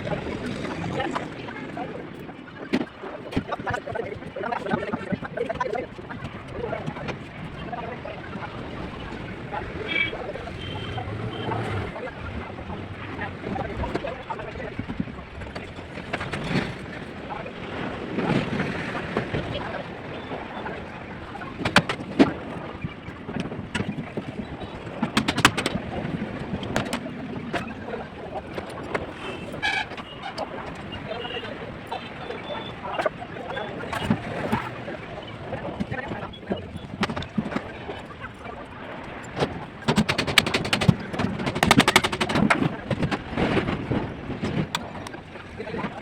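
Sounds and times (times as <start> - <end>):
rapid clicking knocks: 23.3 - 32.4, 39.4 - 43.7.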